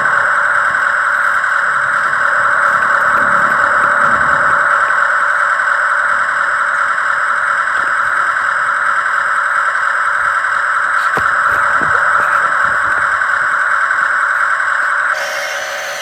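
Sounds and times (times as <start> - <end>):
electric motors and pump whining: 0.0 - 16.0
short knocks: 11.0 - 13.6.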